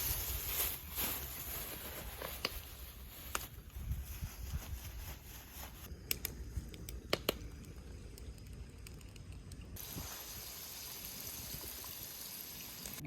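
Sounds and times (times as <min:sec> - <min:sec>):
steady hiss: 0:04.8 - 0:13.0.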